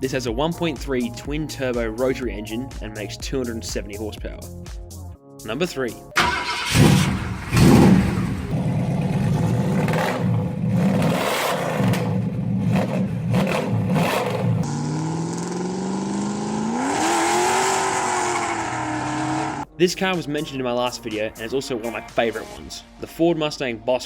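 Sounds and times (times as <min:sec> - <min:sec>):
car engine accelerating: 0:06.2 - 0:19.6
car engine revving: 0:06.2 - 0:19.7.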